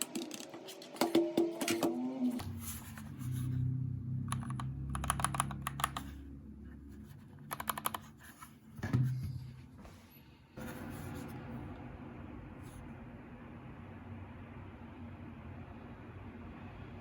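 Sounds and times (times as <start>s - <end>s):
mechanical keyboard keystroke clicks: 4.3s - 6.1s, 7.5s - 8.0s.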